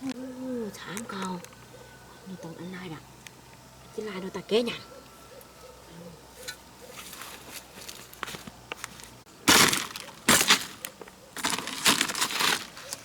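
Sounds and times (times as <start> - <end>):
crunching and crackling: 6.4 - 13.0.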